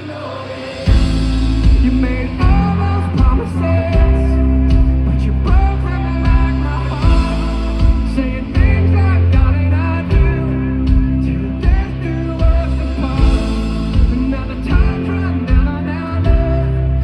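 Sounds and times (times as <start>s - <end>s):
bass and guitars: 0.0s - 17.0s
drums beating: 0.0s - 17.0s
person singing: 0.0s - 17.0s.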